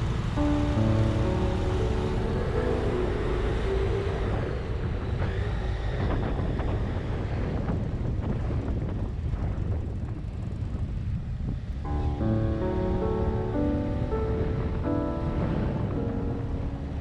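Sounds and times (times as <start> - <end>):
background music: 0.0 - 5.9, 11.8 - 17.0
moving vehicle rumble: 0.0 - 17.0
wind buffeting microphone: 0.0 - 17.0.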